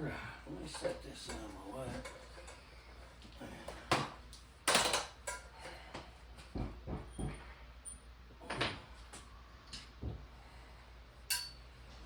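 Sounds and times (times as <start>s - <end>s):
tools knocking and clattering: 3.9s - 5.5s, 6.4s - 7.4s.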